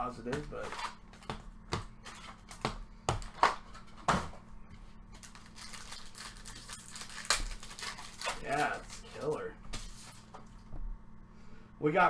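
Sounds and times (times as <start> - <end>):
card pack wrappers snapping: 5.1 - 10.2.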